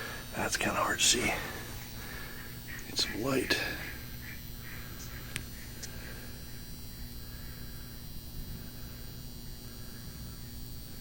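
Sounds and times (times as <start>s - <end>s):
faint electrical hum: 0.0s - 11.0s.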